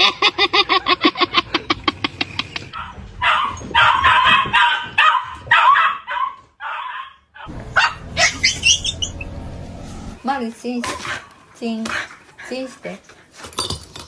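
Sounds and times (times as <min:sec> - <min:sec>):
dog yipping and whining: 0:02.8 - 0:09.4.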